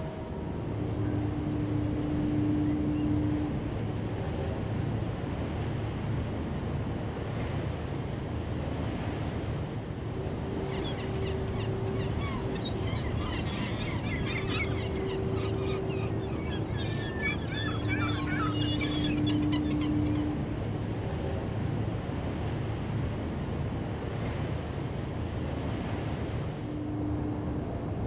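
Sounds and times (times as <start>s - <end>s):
faint long low tones: 0.0s - 5.0s
surf rumble: 0.0s - 28.0s
wind: 0.0s - 28.0s
birds chirping and calling: 10.6s - 20.6s.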